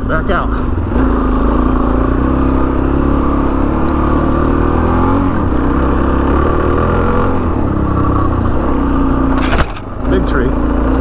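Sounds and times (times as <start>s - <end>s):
motorcycle engine running: 5.3s - 10.2s.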